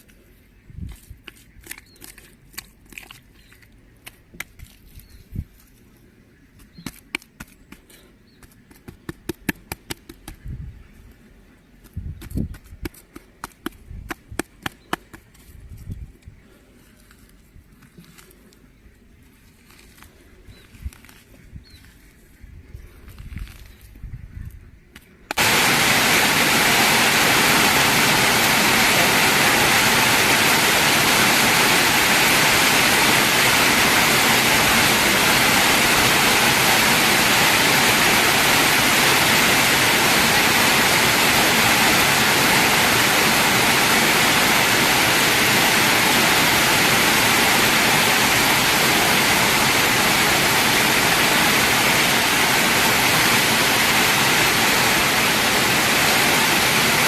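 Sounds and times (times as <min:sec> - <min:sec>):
heavy rain hissing: 0:25.3 - 0:57.0.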